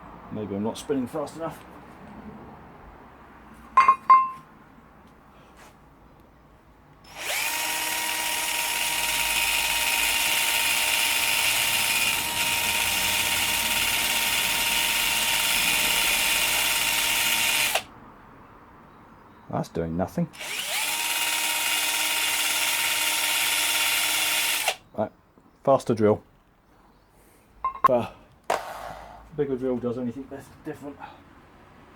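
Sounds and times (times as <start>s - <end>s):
drill clicks: 7.1s - 17.9s, 20.4s - 24.8s
electric drill motor whining: 7.1s - 17.9s, 20.4s - 24.8s.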